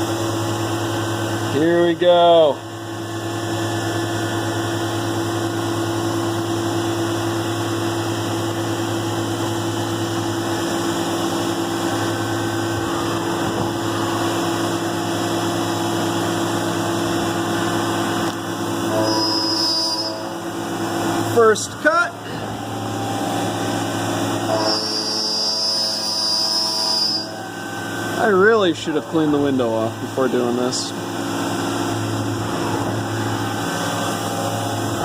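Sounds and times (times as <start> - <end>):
milling machine hum: 0.0 - 35.0.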